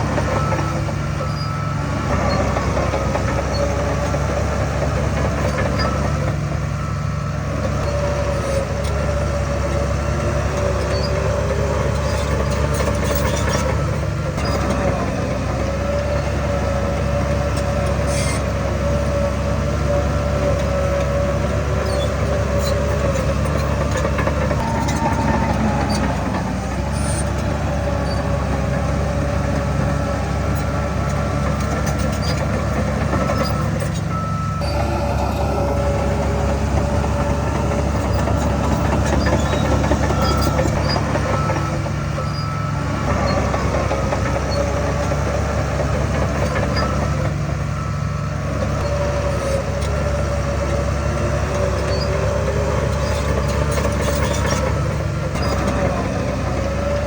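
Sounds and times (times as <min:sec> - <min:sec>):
deep diesel engine drone: 0:00.0 - 0:57.0
high machinery whine: 0:22.8 - 0:44.8.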